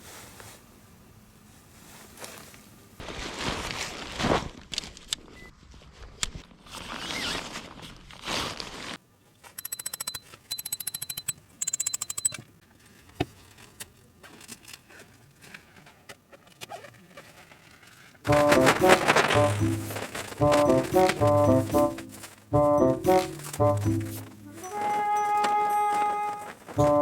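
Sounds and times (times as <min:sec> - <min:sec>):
rustling: 0:17.1 - 0:27.0
footsteps: 0:18.3 - 0:27.0.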